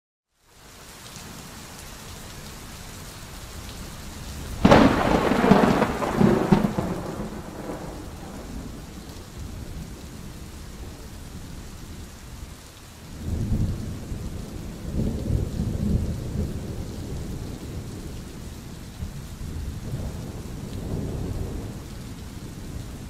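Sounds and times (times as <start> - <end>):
steady rain falling: 0.3 - 23.0
thunderclap rumbling: 4.6 - 11.0, 19.0 - 23.0.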